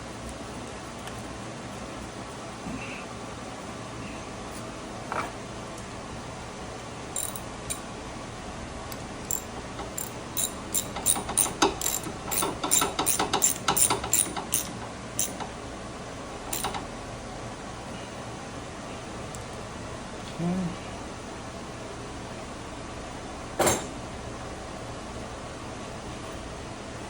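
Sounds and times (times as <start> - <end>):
metal tools clinking: 7.2 - 7.8, 9.3 - 15.4, 16.5 - 16.8.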